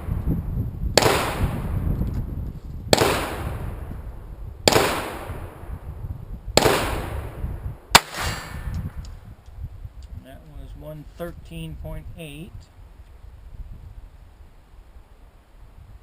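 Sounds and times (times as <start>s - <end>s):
pistol shots: 1.0s - 1.6s, 2.9s - 3.8s, 4.7s - 5.6s, 6.6s - 8.8s.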